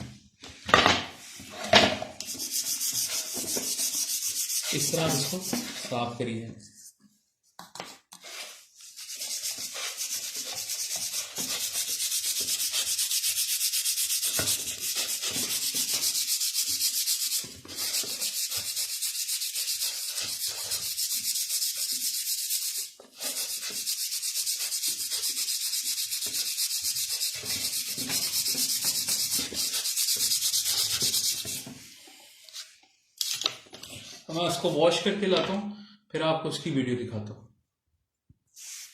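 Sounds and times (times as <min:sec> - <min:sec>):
hand scrubbing wheel hub: 0:02.2 - 0:05.8, 0:08.3 - 0:31.6.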